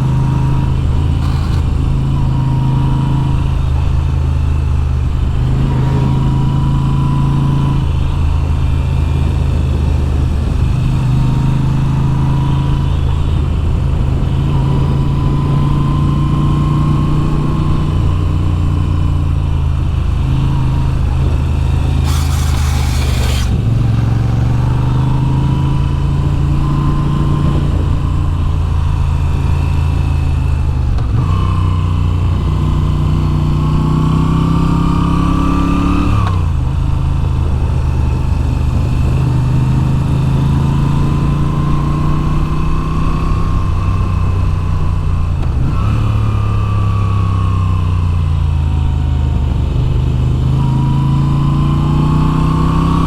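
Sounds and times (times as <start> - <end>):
motorcycle engine running: 0.0 - 35.3
brief hiss: 21.9 - 23.6.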